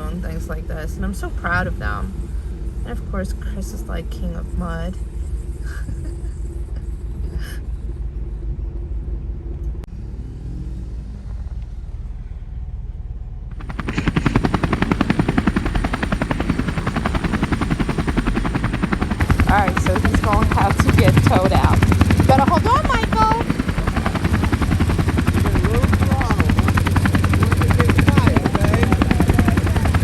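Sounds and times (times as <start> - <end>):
atv engine revving: 13.6 - 30.0.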